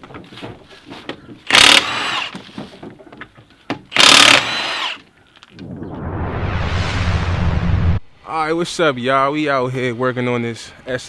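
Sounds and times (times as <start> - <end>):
power tool bursts: 1.5 - 2.4, 4.0 - 5.0
rushing noise with low rumble: 5.6 - 8.2.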